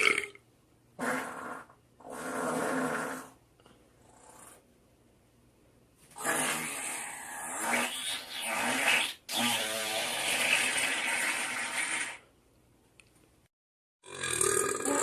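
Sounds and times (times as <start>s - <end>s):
person farting: 0.0s - 0.4s, 1.0s - 3.4s, 6.2s - 12.2s, 14.0s - 15.0s.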